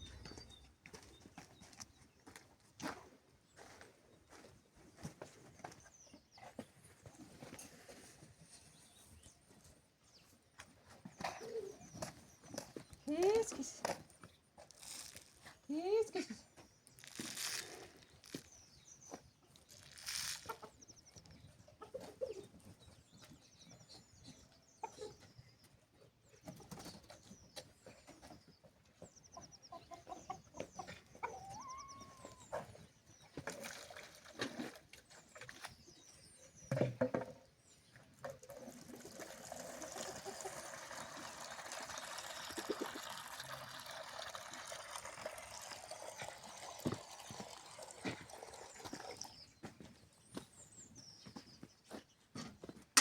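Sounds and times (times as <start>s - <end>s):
small birds chirping: 0.0s - 43.2s, 44.7s - 52.9s
chickens clucking: 19.1s - 33.4s, 38.2s - 49.9s.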